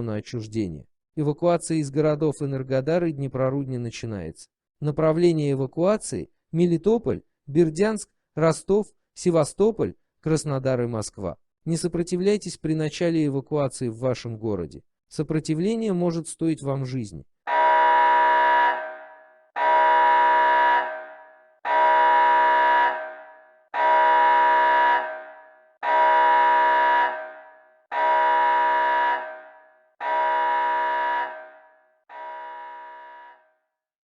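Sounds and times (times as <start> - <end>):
emergency alert tone: 17.5 - 33.5.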